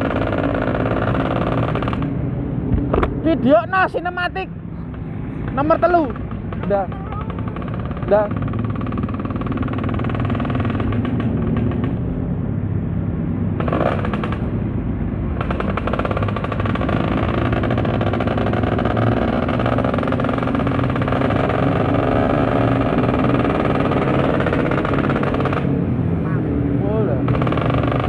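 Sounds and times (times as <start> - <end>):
motorcycle engine running: 0.0 - 3.2, 15.4 - 28.0.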